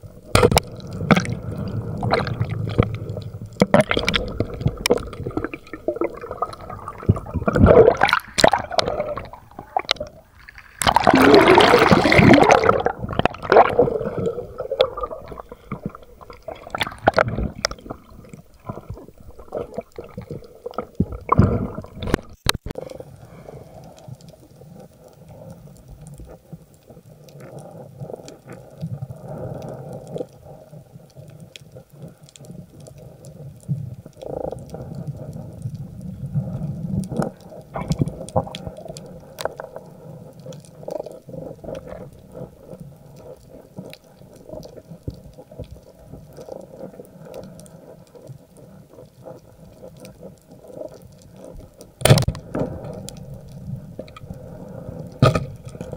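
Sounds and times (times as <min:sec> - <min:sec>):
seawater sloshing and bubbling: 0:00.0 - 0:22.8, 0:34.2 - 0:55.9
rushes of water: 0:00.0 - 0:24.0.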